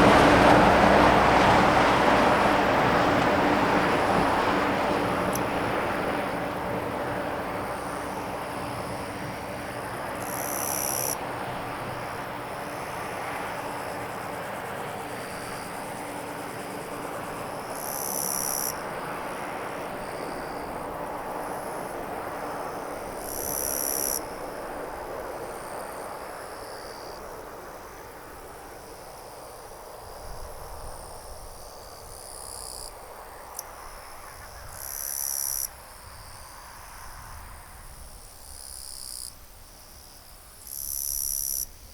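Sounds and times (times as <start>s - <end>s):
broad rushing noise: 0.0s - 10.2s
insects chirping: 0.0s - 41.9s
insects buzzing loudly: 3.5s - 41.9s.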